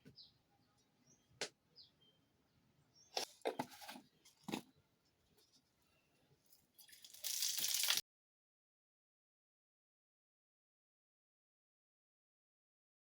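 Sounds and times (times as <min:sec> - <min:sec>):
food sizzling in hot oil: 0:06.9 - 0:08.0.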